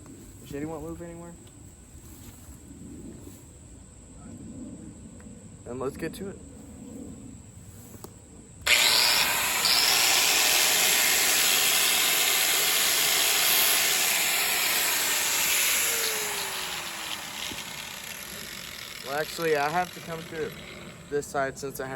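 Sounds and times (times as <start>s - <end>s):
electric sander grinding steel: 8.7s - 21.8s.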